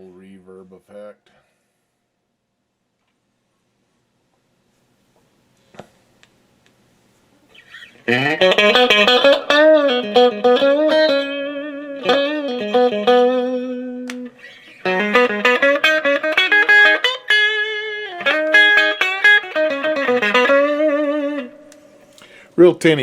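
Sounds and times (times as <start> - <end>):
bent wavering guitar notes: 7.5 - 22.4
tinny electric guitar with reverb: 8.0 - 23.0.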